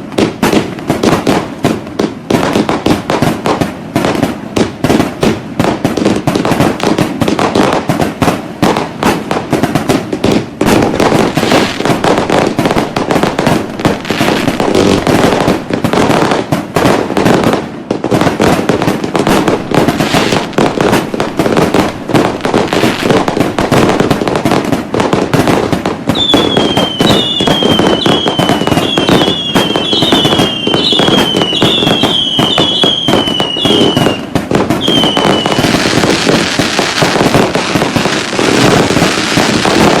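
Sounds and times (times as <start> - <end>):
fireworks bangs and crackling: 0.0 - 40.0
falling firework whistles: 10.2 - 15.5, 19.2 - 23.4, 26.1 - 40.0.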